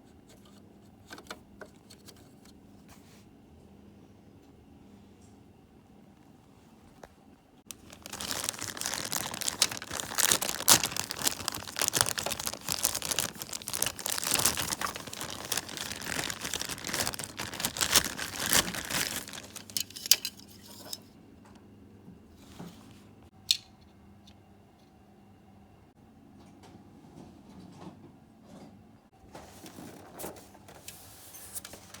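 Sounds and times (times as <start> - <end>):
material crinkling and rustling: 7.7 - 20.4.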